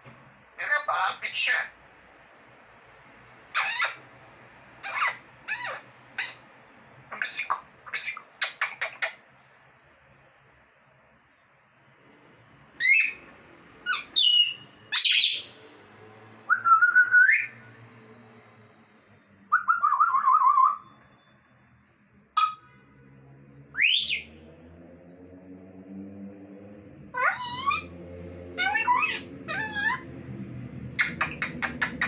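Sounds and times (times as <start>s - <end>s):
parrot whistling and squawking: 3.6s - 4.0s, 4.8s - 6.4s, 7.1s - 9.2s, 12.8s - 13.3s, 13.9s - 15.5s, 16.5s - 17.6s, 19.5s - 20.9s, 22.4s - 22.7s, 23.8s - 24.3s, 27.2s - 27.9s, 28.6s - 30.1s, 31.0s - 32.0s.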